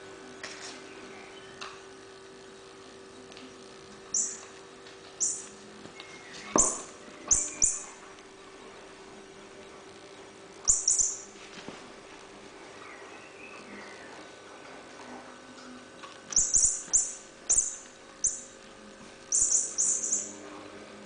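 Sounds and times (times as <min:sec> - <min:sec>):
toy jingling chirps: 0:04.2 - 0:04.4, 0:10.7 - 0:11.3, 0:16.3 - 0:18.5, 0:19.3 - 0:20.4
light knocks on toy: 0:06.6 - 0:06.9.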